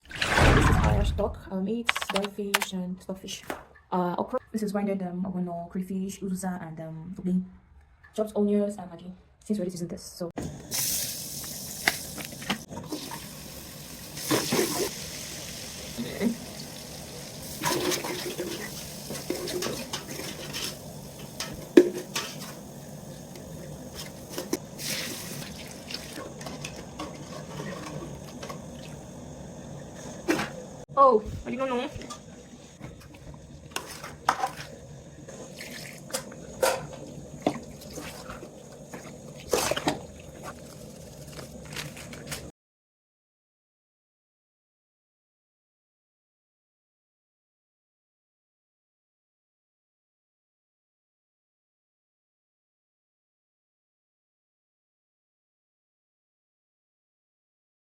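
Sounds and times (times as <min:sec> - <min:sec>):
water running from tap: 0:10.8 - 0:26.4.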